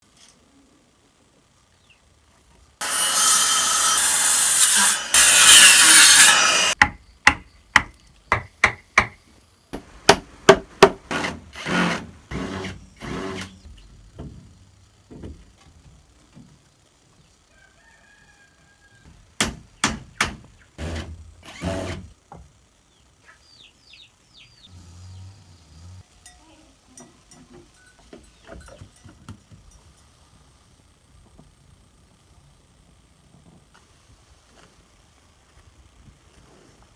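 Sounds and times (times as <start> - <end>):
hand saw cutting wood: 2.8 - 6.8, 9.8 - 13.7, 19.9 - 22.1
sharp knocks on wood: 6.8 - 9.2.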